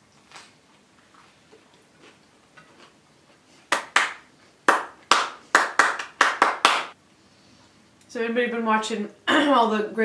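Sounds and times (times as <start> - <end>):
hands clapping: 3.7 - 7.0.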